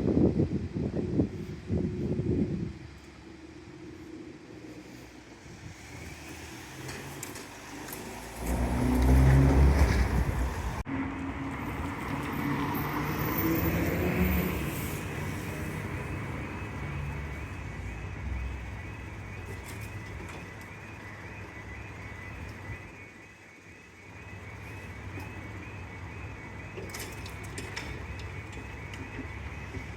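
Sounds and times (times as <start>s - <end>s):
loud low vehicle rumble: 0.0s - 29.9s
engine rising in pitch: 4.7s - 19.8s.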